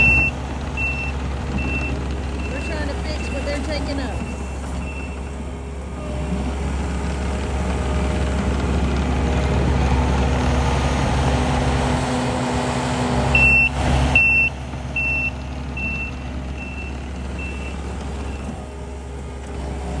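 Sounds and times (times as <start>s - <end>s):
reversing alarm beeps: 0.0s - 5.4s, 13.3s - 18.6s
diesel engine running: 0.0s - 20.0s.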